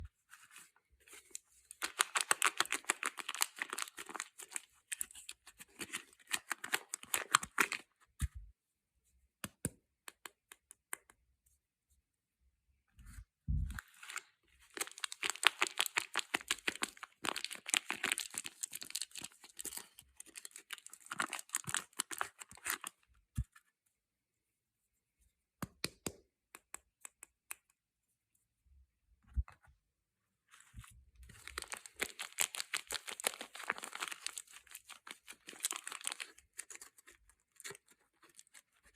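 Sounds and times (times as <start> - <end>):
packaging crackling and tearing: 1.8 - 7.9, 14.7 - 22.9, 31.4 - 38.9.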